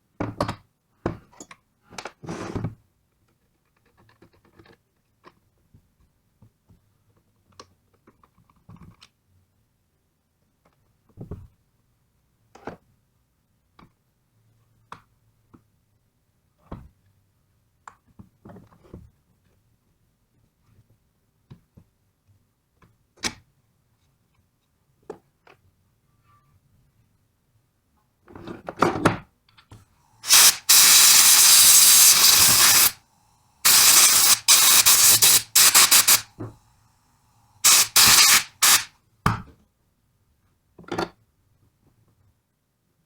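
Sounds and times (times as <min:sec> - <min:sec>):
pneumatic impact wrench hammering: 0:30.2 - 0:33.0, 0:33.6 - 0:36.5, 0:37.6 - 0:38.9.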